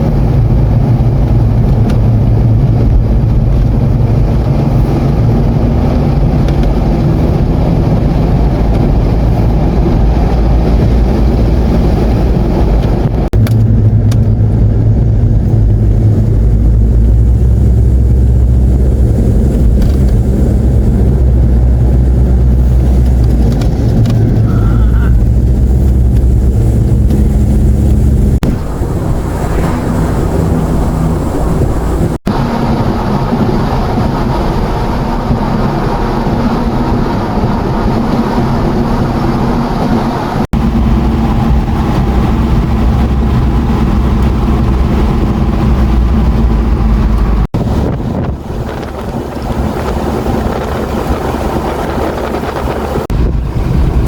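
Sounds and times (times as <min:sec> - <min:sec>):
vehicle engine running: 0:00.0 - 0:54.0
wind rushing: 0:00.0 - 0:54.0.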